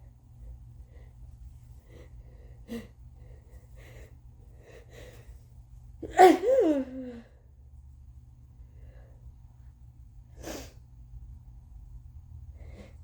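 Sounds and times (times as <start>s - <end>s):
loud sneeze: 6.0s - 6.9s.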